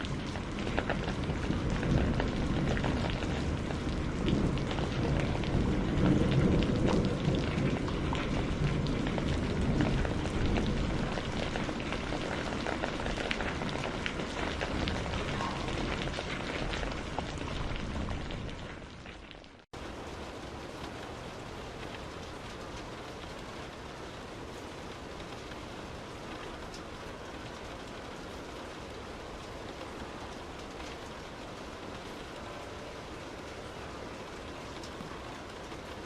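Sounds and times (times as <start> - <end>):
steady rain falling: 0.0 - 36.0.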